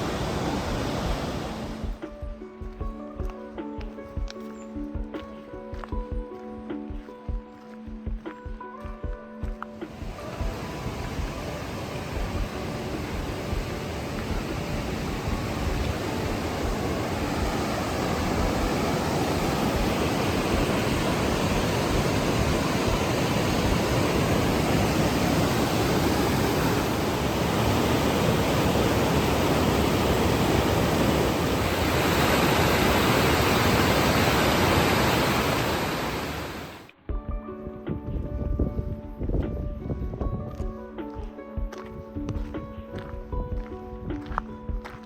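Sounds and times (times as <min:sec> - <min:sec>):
rushing water roar: 0:00.0 - 0:02.0, 0:09.8 - 0:36.9.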